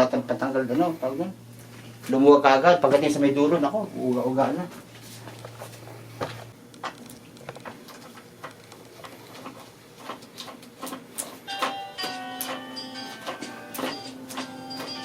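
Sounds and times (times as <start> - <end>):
hand tools clicking and tapping: 6.8 - 15.0.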